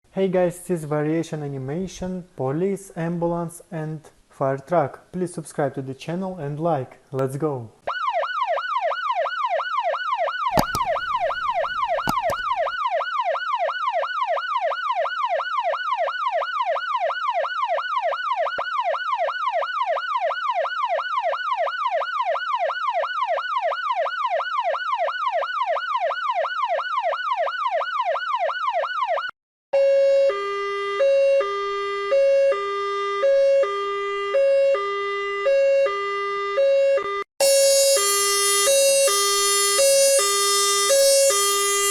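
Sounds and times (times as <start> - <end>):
siren yelping: 7.9 - 13.3, 31.2 - 41.9
two-tone hi-lo siren: 7.9 - 41.9
clicks: 10.5 - 12.8.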